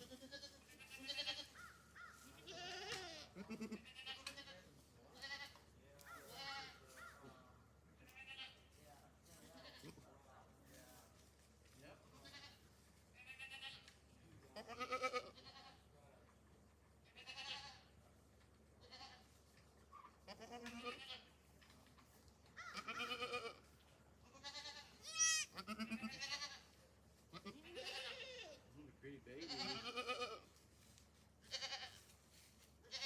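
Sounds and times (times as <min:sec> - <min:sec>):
goats bleating: 0:00.0 - 0:05.6, 0:06.2 - 0:06.9, 0:08.0 - 0:08.7, 0:12.2 - 0:12.6, 0:13.2 - 0:13.9, 0:14.5 - 0:15.8, 0:17.1 - 0:17.9, 0:18.8 - 0:19.3, 0:20.3 - 0:21.4, 0:22.6 - 0:26.7, 0:27.3 - 0:28.6, 0:29.4 - 0:30.5, 0:31.4 - 0:32.0.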